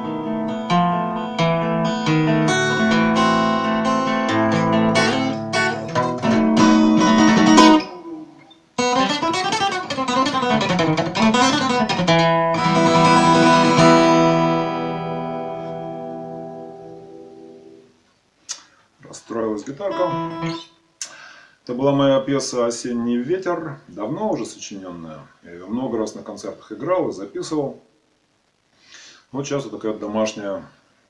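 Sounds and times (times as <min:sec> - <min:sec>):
acoustic guitar playing: 0:00.0 - 0:18.0, 0:19.6 - 0:21.1.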